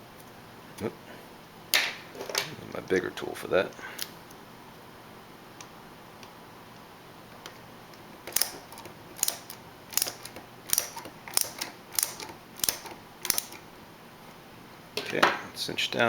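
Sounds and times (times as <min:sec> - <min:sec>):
screwdriver metal clicks: 0:08.3 - 0:13.6.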